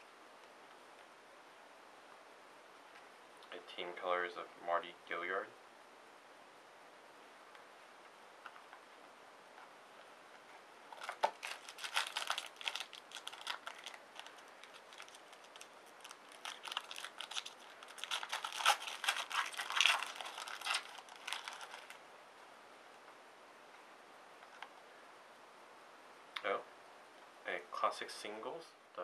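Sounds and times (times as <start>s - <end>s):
wrapper and cards crinkling: 10.9s - 22.0s.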